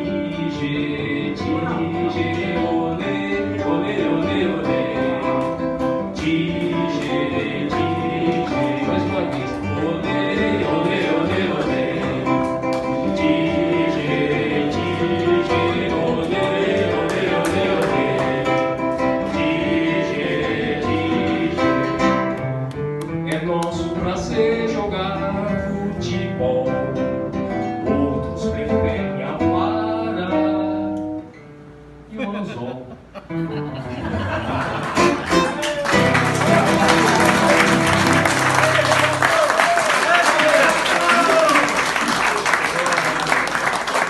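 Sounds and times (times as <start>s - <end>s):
acoustic guitar song with singing: 0.0s - 42.2s.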